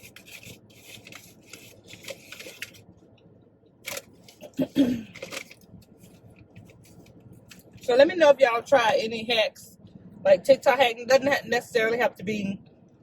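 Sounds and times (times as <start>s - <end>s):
rustling handling noises: 0.0s - 3.2s, 3.8s - 7.9s.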